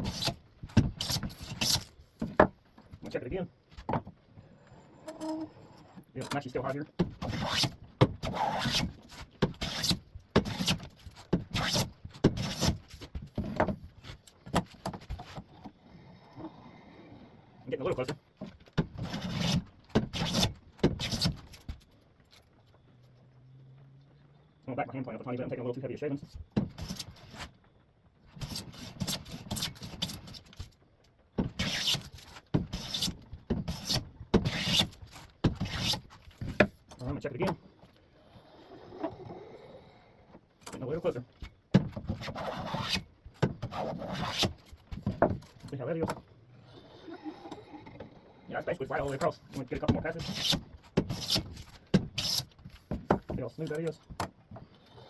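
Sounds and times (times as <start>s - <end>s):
hand plane shaving wood: 0.0s - 0.4s, 1.0s - 2.0s, 7.2s - 13.7s, 19.0s - 21.4s, 31.6s - 36.8s, 42.1s - 44.9s, 48.9s - 53.9s.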